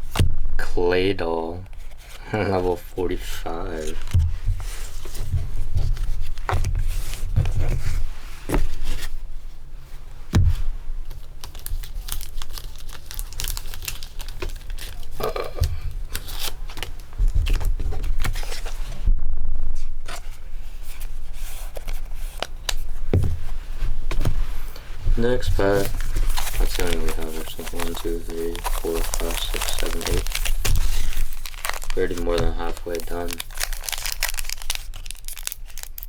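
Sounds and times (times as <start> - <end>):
plastic card sleeves rustling: 1.6 - 19.0, 20.1 - 36.0
foil wrappers crinkling: 1.8 - 9.2, 11.0 - 18.8, 23.8 - 36.0
soft thumps: 10.3 - 10.8, 23.0 - 26.3.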